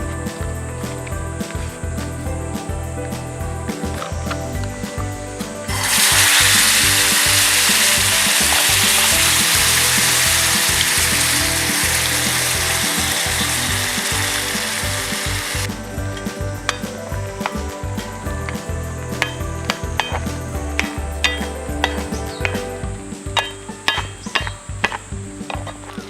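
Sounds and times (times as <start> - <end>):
background music: 0.0 - 26.0
food sizzling in a hot pan: 5.7 - 15.7.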